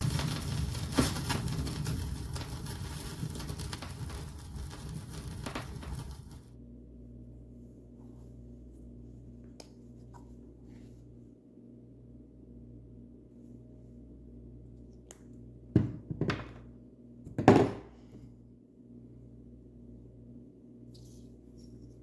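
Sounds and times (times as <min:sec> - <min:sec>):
rustling and scraping: 0:00.0 - 0:06.6
steady low hum: 0:00.0 - 0:16.0.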